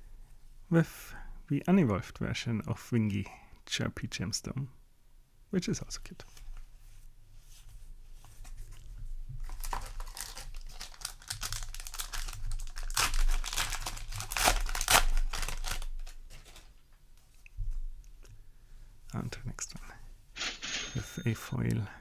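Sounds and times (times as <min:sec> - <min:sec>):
card pack wrapper crinkling: 0:09.4 - 0:16.8.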